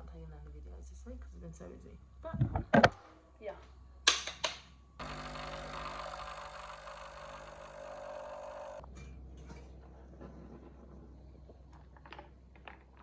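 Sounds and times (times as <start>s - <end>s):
whirring with low hum: 0.0s - 8.9s.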